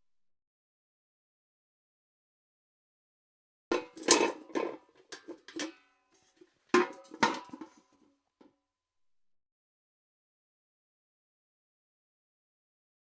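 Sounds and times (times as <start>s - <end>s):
steel bucket clanking: 3.7s - 7.8s.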